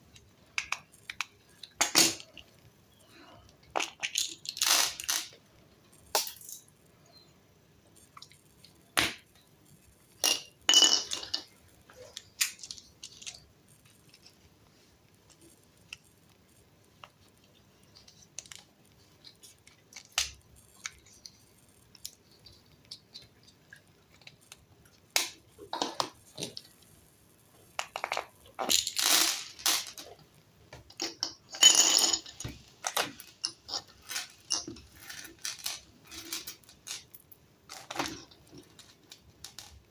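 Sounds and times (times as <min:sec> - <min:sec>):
bicycle parts clinking: 0:10.2 - 0:13.4, 0:30.9 - 0:39.8.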